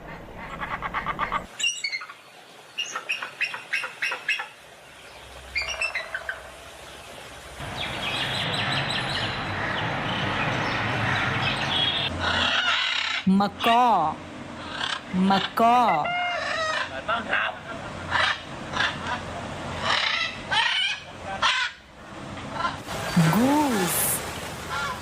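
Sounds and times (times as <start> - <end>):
bird calls: 0.0 - 13.3.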